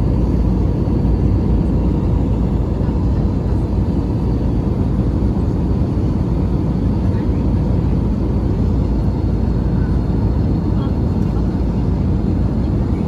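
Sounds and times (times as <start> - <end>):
aircraft cabin engine roar: 0.0 - 13.0.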